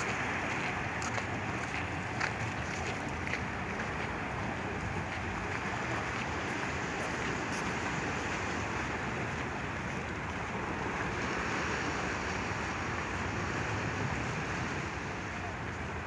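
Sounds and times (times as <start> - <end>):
sea waves washing: 0.0 - 16.0.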